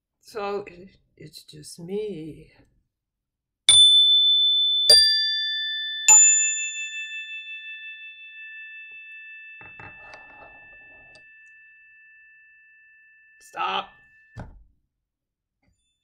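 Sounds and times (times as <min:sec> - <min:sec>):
metal chimes ringing: 0:03.7 - 0:14.4.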